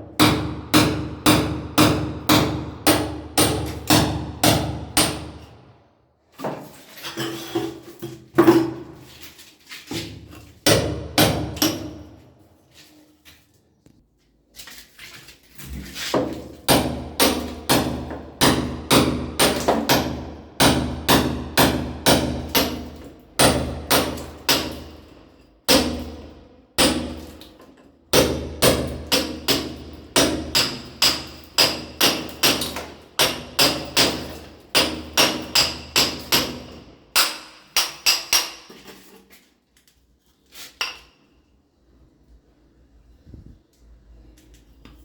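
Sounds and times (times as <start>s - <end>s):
hammer striking steel chisel: 0.2s - 5.4s, 28.1s - 38.8s.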